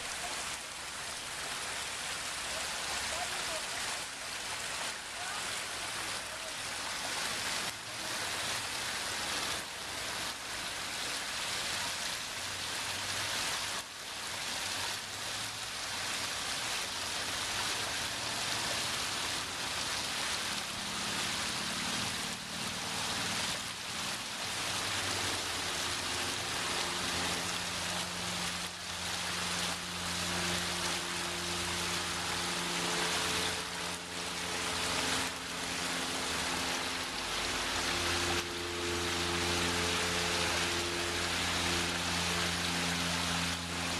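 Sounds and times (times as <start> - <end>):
waterfall pouring and splashing: 0.0 - 43.9
low steady hum: 17.2 - 43.9.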